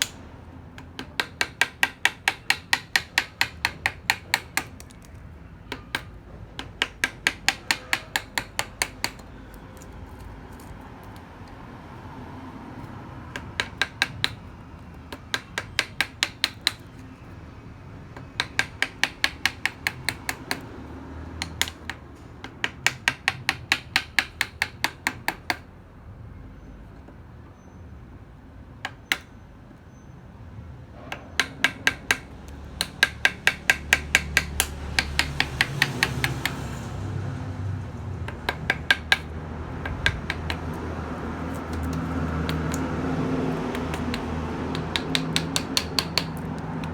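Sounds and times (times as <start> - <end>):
mallet striking chisel into wood: 0.0 - 0.2, 0.8 - 9.9, 13.3 - 17.0, 18.2 - 20.8, 21.4 - 25.6, 28.8 - 29.3, 31.1 - 36.8, 38.3 - 40.9, 41.5 - 42.9, 43.5 - 46.9.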